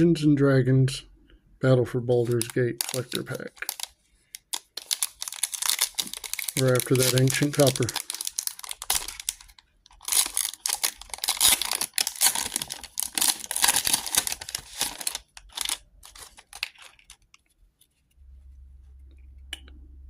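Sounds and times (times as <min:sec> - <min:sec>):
foil wrapper tearing and crinkling: 0:02.2 - 0:17.4.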